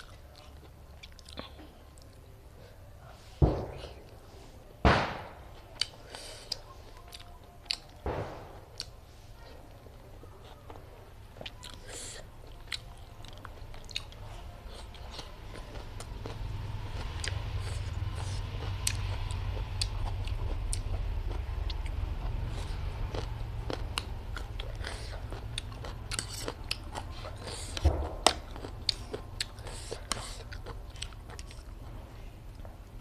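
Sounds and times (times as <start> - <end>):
chewing and biting food: 0.0 - 2.2, 5.7 - 8.0, 9.6 - 33.0.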